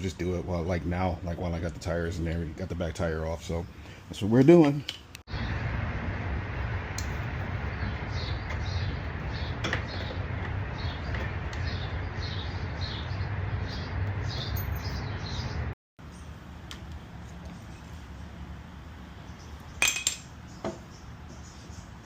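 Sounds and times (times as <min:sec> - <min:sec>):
steady low rumble: 0:05.3 - 0:14.8
small bird chirping: 0:07.6 - 0:16.3.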